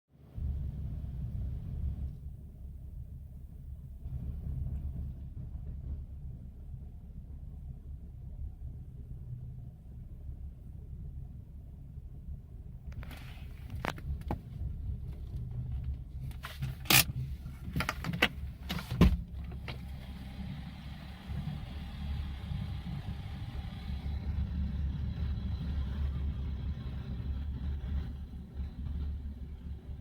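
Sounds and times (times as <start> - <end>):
car engine idling: 0.3 - 30.0
sharp clicks and knocks: 15.1 - 20.1.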